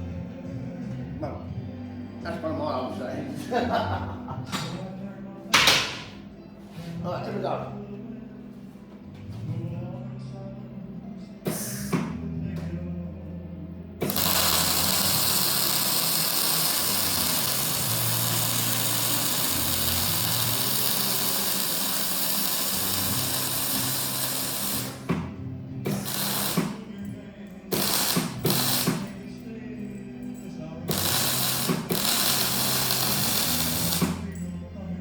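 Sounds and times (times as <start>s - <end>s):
faint background music: 0.0s - 35.0s
welding arc crackling: 14.0s - 25.1s, 25.8s - 26.9s, 27.7s - 29.2s, 30.9s - 34.4s.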